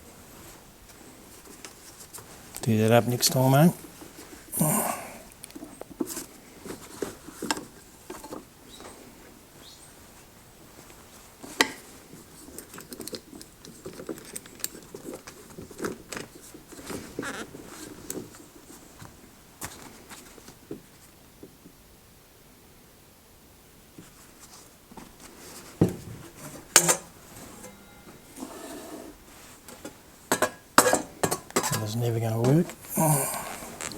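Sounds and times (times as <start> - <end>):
tools and metal parts clicking: 12.4 - 16.0.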